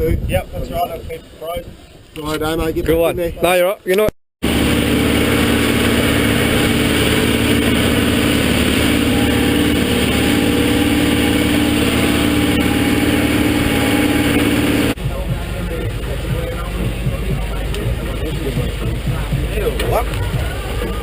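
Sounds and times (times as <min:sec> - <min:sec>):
boat engine droning: 0:04.4 - 0:21.0.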